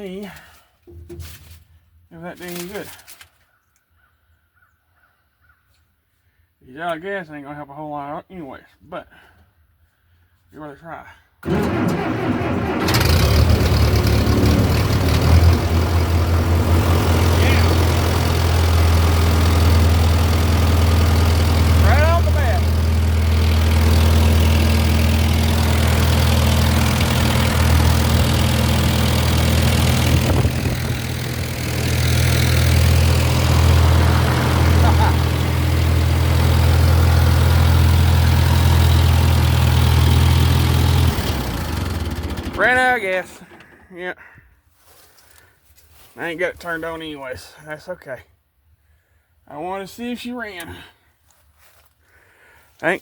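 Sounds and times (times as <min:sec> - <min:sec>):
tractor engine idling: 0:11.4 - 0:44.0.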